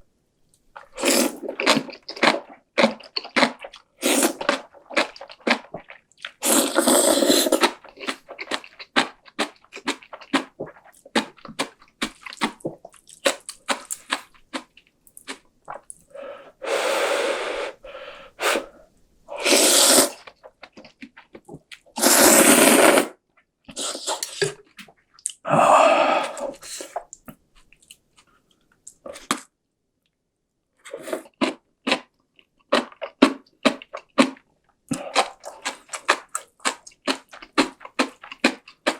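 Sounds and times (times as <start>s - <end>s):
person slurping noodles: 0.8s - 2.5s, 4.0s - 5.6s, 6.4s - 8.6s, 16.2s - 20.3s, 22.0s - 24.6s, 25.5s - 27.0s, 34.9s - 36.3s
chewing and mouth clicks: 7.5s - 16.1s, 26.4s - 29.4s, 31.2s - 38.9s.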